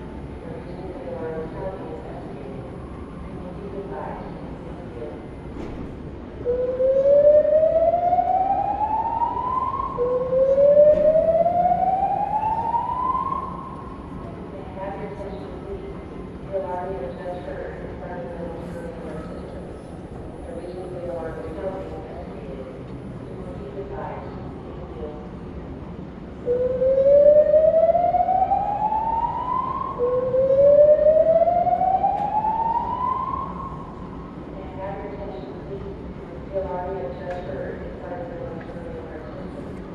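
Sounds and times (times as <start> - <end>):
fire alarm whooping: 26.5 - 34.0.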